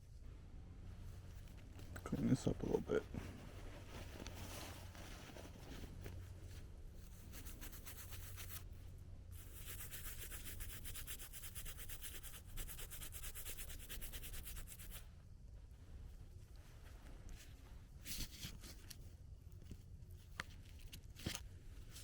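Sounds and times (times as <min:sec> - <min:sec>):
scratchy rubbing: 0:07.0 - 0:08.6, 0:09.3 - 0:15.0.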